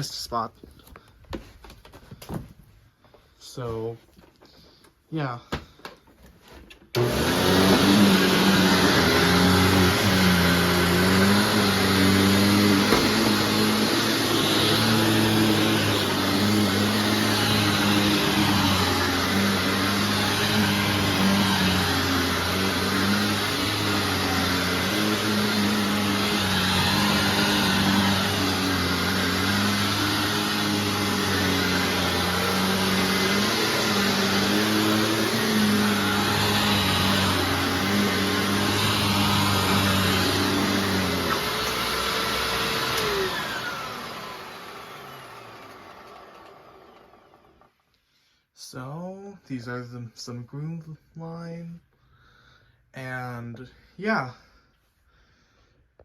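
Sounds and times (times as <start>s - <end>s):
upright vacuum cleaner running: 6.9s - 47.8s.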